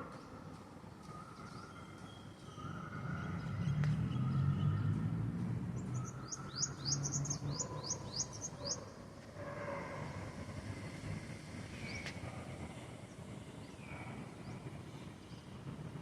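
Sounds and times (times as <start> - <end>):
distant city traffic rumble: 0.0 - 16.0
bird chirping: 5.8 - 8.9.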